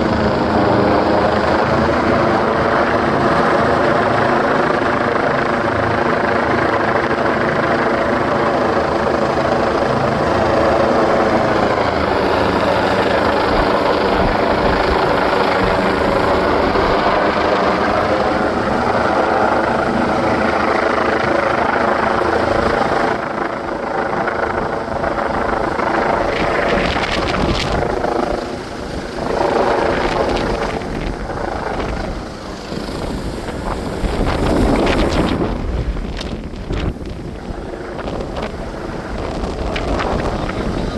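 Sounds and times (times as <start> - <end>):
helicopter rotor and engine: 0.0 - 40.9.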